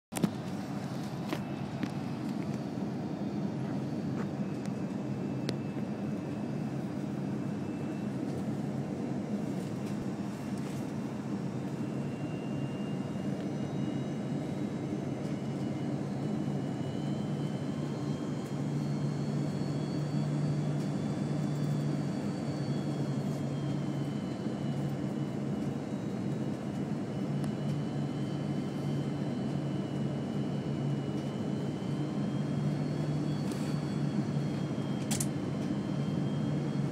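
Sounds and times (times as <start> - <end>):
jet engines droning: 0.1 - 36.9
high whine tones: 0.2 - 36.9.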